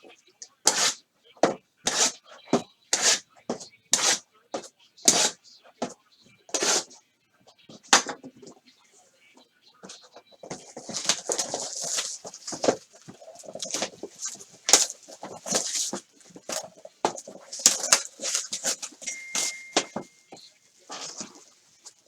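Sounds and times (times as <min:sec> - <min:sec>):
plastic wrap and cardboard crinkling: 0:09.9 - 0:22.0
thin high tone: 0:19.0 - 0:20.5.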